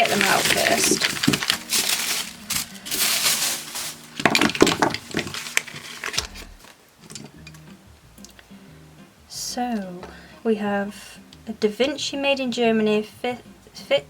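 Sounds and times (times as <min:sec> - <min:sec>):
packaging rustling and crinkling: 0:00.0 - 0:07.2
items clicking and clinking: 0:00.0 - 0:07.6.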